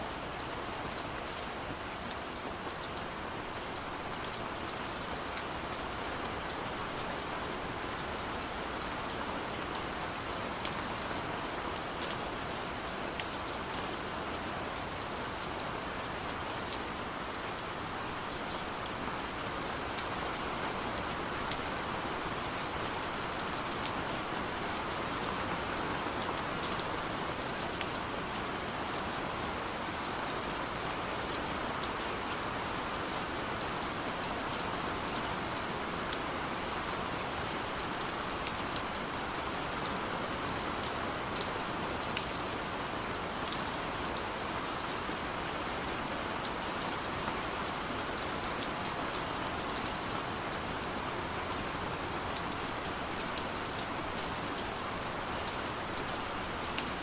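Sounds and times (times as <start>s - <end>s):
steady gentle rain: 0.0s - 57.0s.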